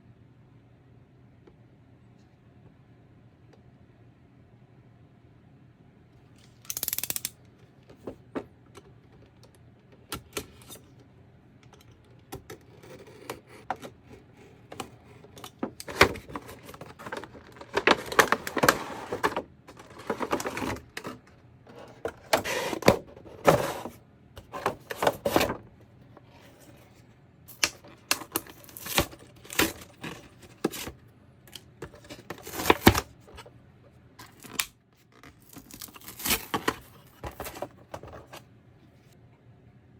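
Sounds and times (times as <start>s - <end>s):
packaging being handled: 12.9s - 25.6s.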